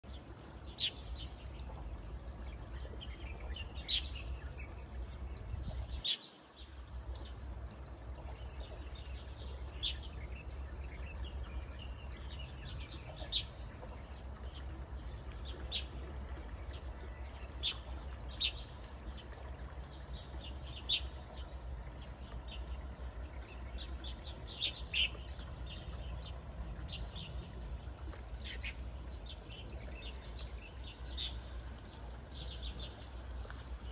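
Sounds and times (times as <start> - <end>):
insect trill: 0.0 - 33.9.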